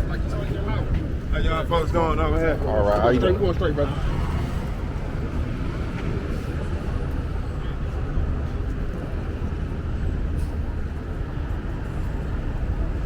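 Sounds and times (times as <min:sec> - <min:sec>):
city background rumble: 0:00.0 - 0:13.0.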